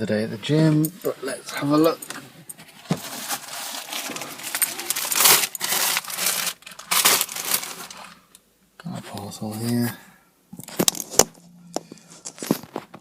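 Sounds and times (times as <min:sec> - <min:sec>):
plastic packaging crinkling: 0:03.0 - 0:08.2.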